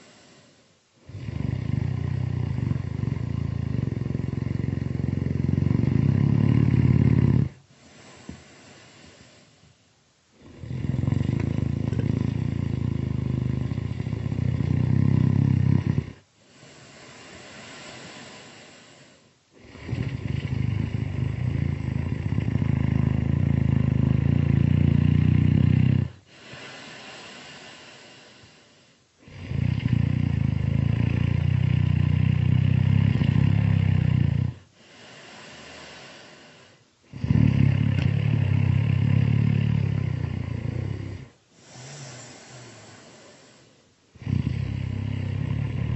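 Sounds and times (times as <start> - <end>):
breathy exhales: 0.0 - 0.8, 16.4 - 19.4, 26.3 - 29.0, 34.8 - 37.4, 41.5 - 43.9
loud slow snoring: 0.0 - 9.5, 10.4 - 45.9.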